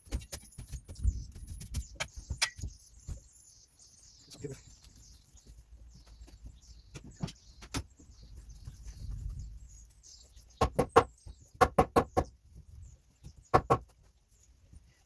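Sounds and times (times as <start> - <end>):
faint bird chirping: 0.0 - 15.0
hammer striking wood: 10.6 - 12.3, 13.5 - 13.9.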